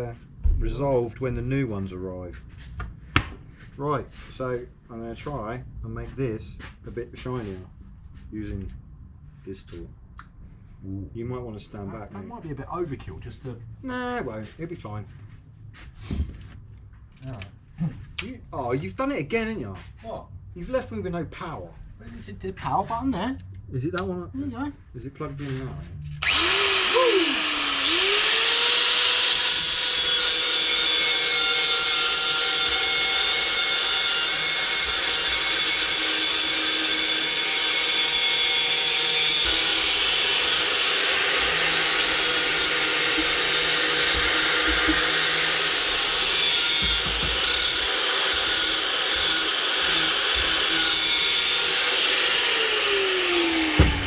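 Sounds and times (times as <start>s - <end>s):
power tool scouring metal: 26.2s - 54.0s.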